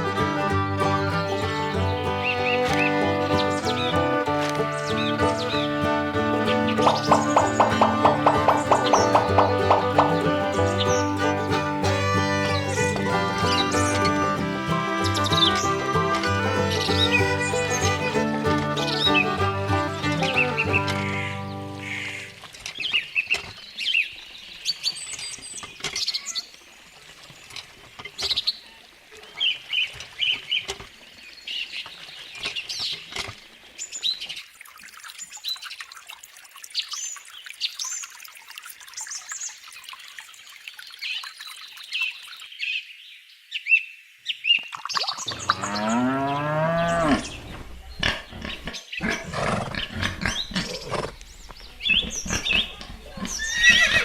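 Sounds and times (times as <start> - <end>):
small birds chirping: 1.0 - 4.0, 4.6 - 19.5, 36.7 - 54.0
cow mooing: 45.4 - 47.5.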